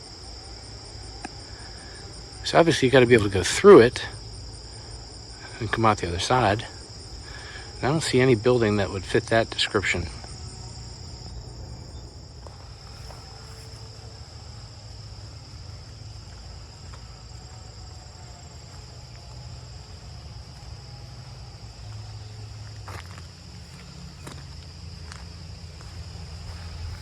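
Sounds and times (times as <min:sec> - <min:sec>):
crickets trilling: 0:00.0 - 0:27.0
low rumble: 0:10.0 - 0:14.5.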